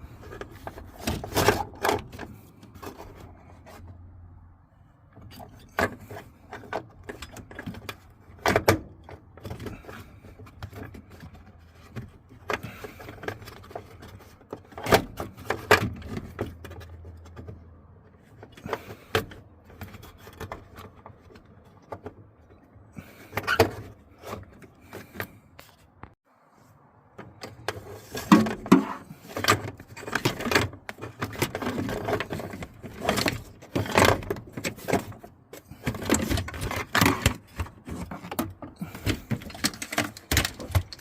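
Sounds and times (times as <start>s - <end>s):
tools clicking and rattling: 27.3s - 41.0s.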